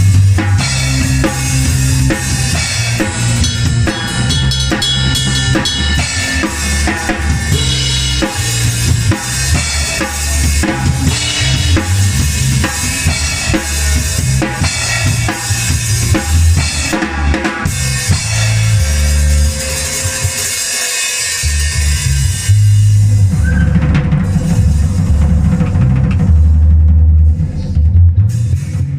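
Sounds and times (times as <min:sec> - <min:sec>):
low bass notes: 0:00.0 - 0:20.5, 0:21.4 - 0:28.9
drum kit playing: 0:00.0 - 0:28.9
held chords: 0:00.4 - 0:21.7.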